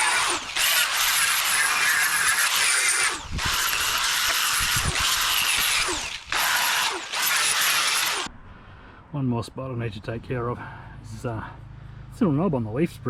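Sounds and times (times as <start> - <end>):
power tool wheel scouring steel: 0.0 - 8.3.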